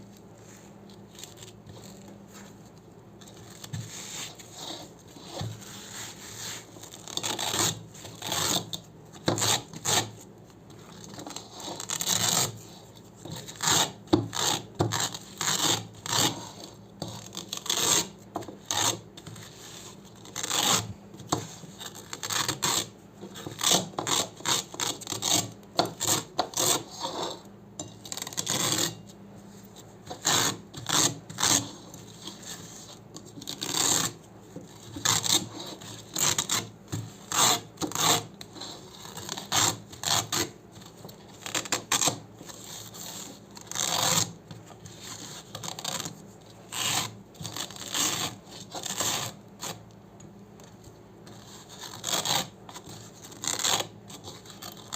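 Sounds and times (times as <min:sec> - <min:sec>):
velcro ripping: 0:06.4 - 0:08.7, 0:11.0 - 0:12.6, 0:20.2 - 0:20.9, 0:21.8 - 0:22.9, 0:33.4 - 0:34.2, 0:35.0 - 0:36.7, 0:41.4 - 0:44.3, 0:45.0 - 0:46.1, 0:46.7 - 0:49.8, 0:51.6 - 0:52.5, 0:53.2 - 0:54.9.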